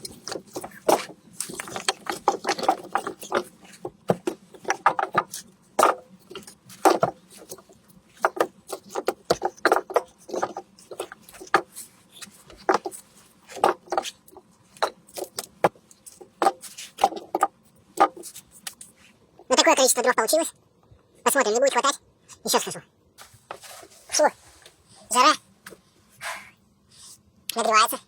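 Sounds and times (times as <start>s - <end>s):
firewood logs knocking: 0.0s - 18.8s.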